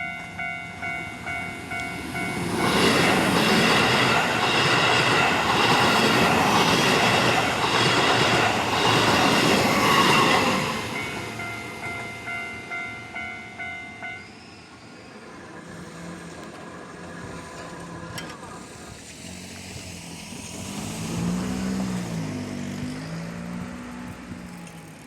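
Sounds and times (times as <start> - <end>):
level crossing warning bell: 0.0 - 15.0.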